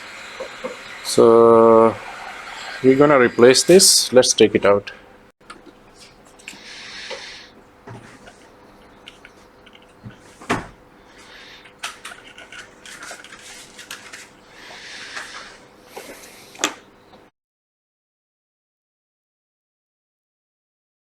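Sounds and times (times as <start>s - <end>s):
short hissing bursts: 0.0s - 4.1s, 6.6s - 7.5s.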